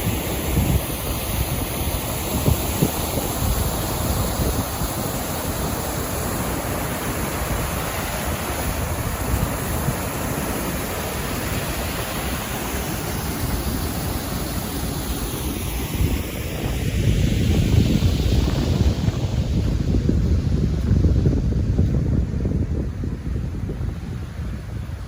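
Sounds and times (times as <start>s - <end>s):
wind on microphone: 0.0s - 25.0s.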